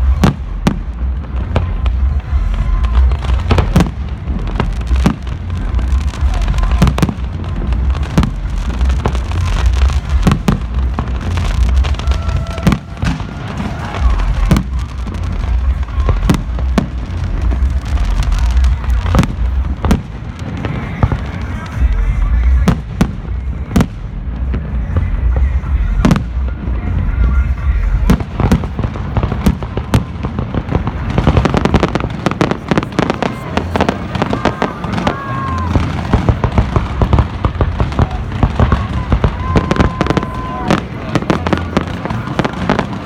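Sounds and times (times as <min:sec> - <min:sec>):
continuous low rumble: 0:00.0 - 0:43.0
fireworks bangs and crackles: 0:00.0 - 0:43.0.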